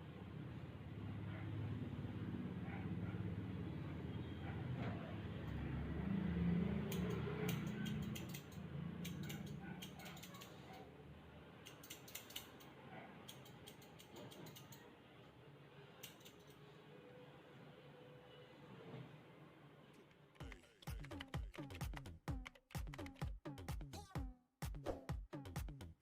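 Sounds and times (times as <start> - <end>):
sharp mechanical clicks: 6.8 - 10.8, 11.6 - 14.9, 16.0 - 16.6.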